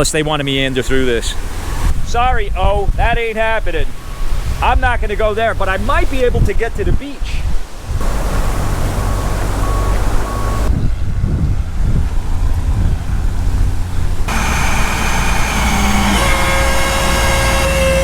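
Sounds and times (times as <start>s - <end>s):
wind rumble on microphone: 0.9s - 14.3s
heavy truck running: 8.0s - 18.0s
short beeps: 9.0s - 10.7s
steady pitched horn note: 14.3s - 18.0s.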